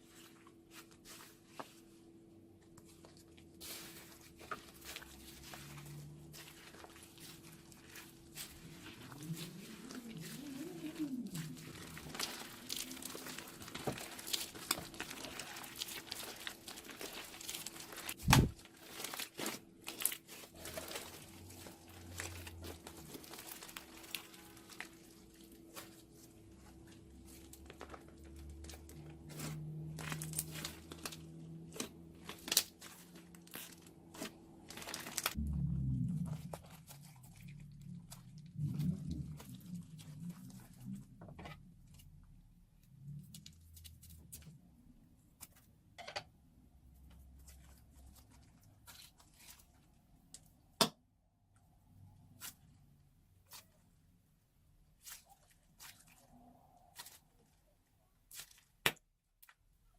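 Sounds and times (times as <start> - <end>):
plastic piping bag crinkling: 3.2 - 35.4
slime crackling and popping: 3.6 - 26.2, 27.3 - 35.4.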